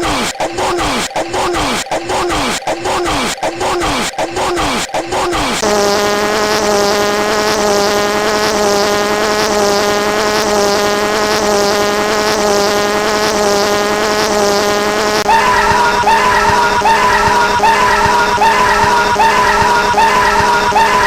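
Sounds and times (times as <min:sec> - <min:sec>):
loud buzzing drone: 0:05.6 - 0:21.0.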